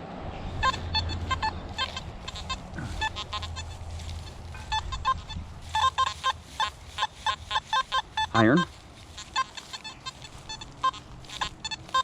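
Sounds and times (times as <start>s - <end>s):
metal detector beeps: 0.6s - 12.0s.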